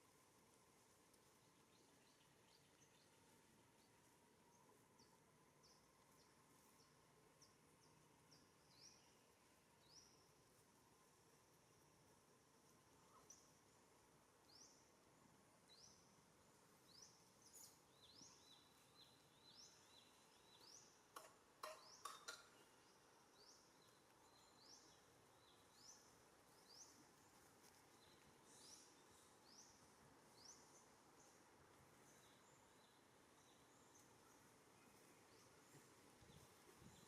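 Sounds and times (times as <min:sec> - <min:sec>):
bird chirping: 0:15.7 - 0:37.0.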